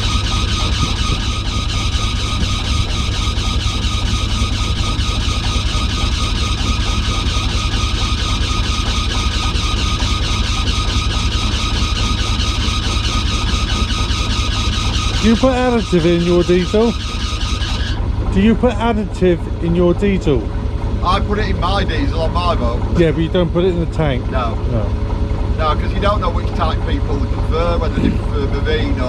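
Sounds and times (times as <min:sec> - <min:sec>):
boat diesel engine idling: 0:00.0 - 0:29.0
constant high whine: 0:00.0 - 0:29.0.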